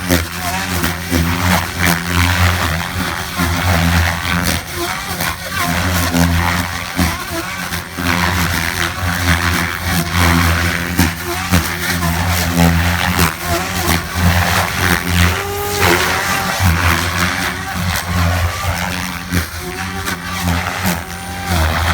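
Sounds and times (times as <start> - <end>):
rc helicopter motor whine: 0.0 - 21.9
rotor blade noise: 10.7 - 21.9.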